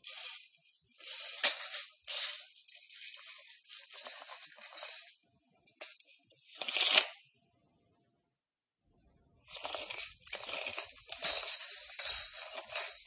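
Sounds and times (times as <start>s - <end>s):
tape measure rattling and sliding: 0.0s - 5.2s, 5.8s - 7.2s, 9.5s - 13.0s.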